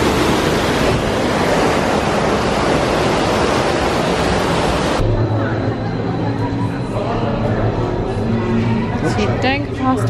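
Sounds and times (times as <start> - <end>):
loud steady rushing noise: 0.0 - 9.9.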